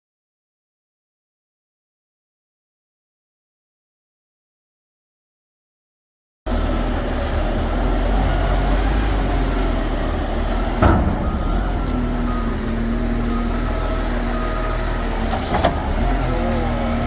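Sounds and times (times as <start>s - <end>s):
diesel truck engine running: 6.5s - 17.0s.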